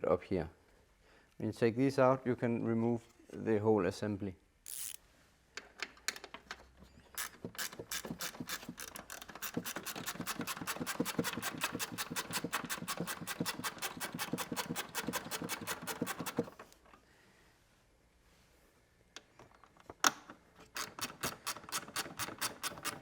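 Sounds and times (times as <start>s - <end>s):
screwdriver ratcheting clicks: 4.7s - 5.0s, 5.8s - 16.6s, 20.0s - 23.0s.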